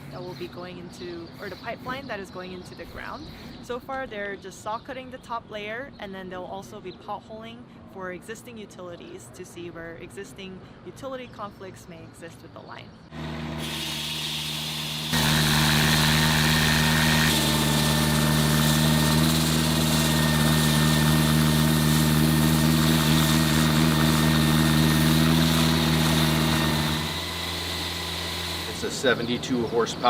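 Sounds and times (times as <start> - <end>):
slab saw running: 13.1 - 30.0.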